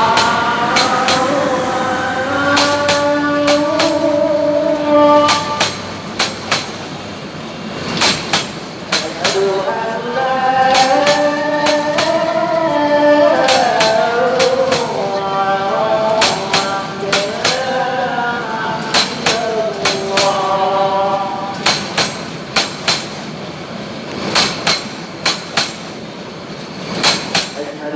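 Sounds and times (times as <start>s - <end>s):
train wheels clacking over rail joints: 0.0s - 27.9s.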